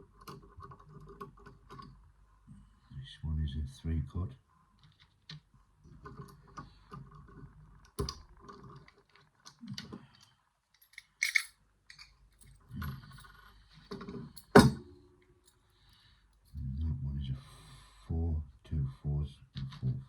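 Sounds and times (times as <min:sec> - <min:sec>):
metal levers clinking: 0:10.9 - 0:12.1.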